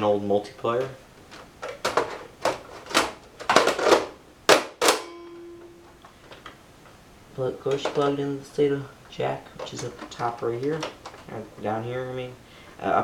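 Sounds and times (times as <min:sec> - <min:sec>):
computer parts clattering: 0:00.4 - 0:06.6, 0:07.4 - 0:11.9
faint steady tone: 0:04.8 - 0:09.6.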